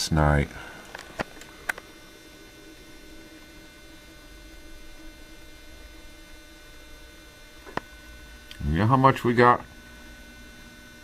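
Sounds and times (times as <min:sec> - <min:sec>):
faint hum: 0:00.0 - 0:11.0.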